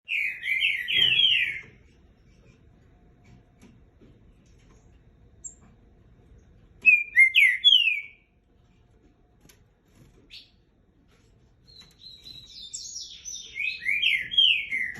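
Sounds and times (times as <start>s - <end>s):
bird whistling song: 0.0s - 1.8s, 6.8s - 8.3s, 11.7s - 14.9s.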